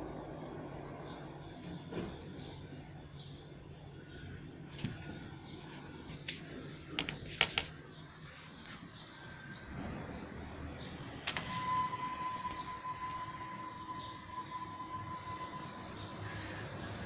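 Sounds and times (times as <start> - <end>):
steady tone: 11.3 - 17.0.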